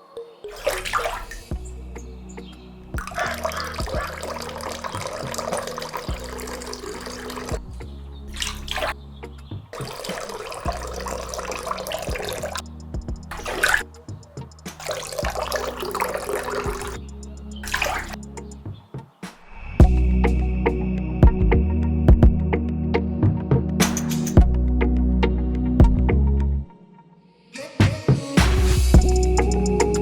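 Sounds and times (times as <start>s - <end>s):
background music: 0.0s - 30.0s
water gushing and splashing: 0.5s - 1.6s, 3.0s - 9.0s, 9.8s - 14.1s, 14.7s - 17.0s, 17.6s - 18.3s.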